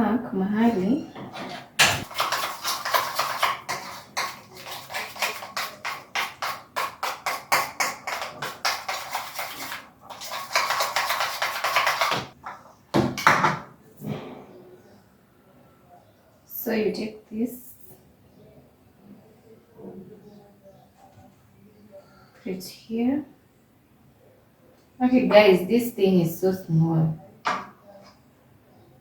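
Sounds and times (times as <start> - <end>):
knocking on a kitchen work surface: 11.2 - 14.2.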